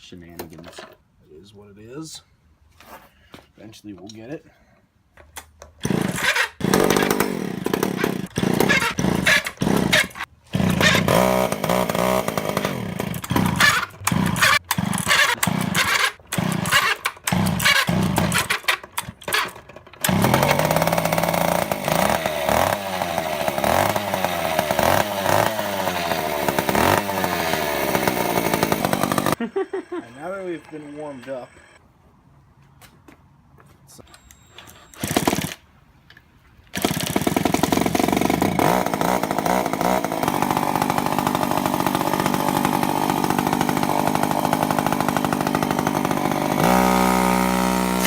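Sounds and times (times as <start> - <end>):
chainsaw engine revving: 5.8 - 29.4, 35.0 - 35.6, 36.7 - 48.0.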